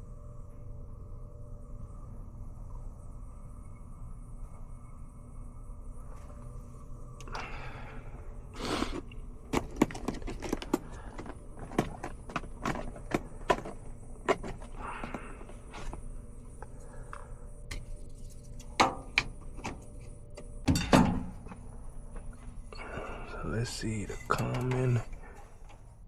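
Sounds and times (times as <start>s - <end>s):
low steady hum: 0.0s - 26.0s
tools and metal parts clicking: 9.5s - 15.2s, 23.9s - 25.8s.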